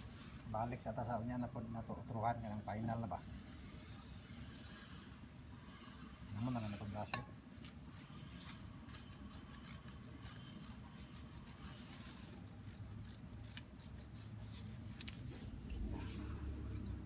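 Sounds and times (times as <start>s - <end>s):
stiff brush scrubbing chain: 8.9s - 14.4s.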